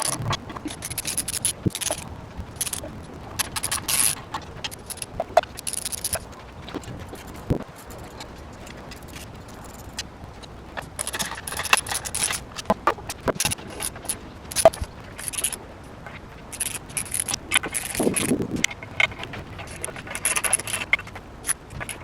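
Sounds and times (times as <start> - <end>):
jingling metal: 0.0 - 2.0, 2.6 - 6.2, 10.8 - 12.7, 13.4 - 15.6, 16.5 - 22.0
metal tools clinking and scraping: 0.0 - 2.0, 2.6 - 6.2, 10.9 - 12.6, 13.3 - 15.6, 16.5 - 22.0.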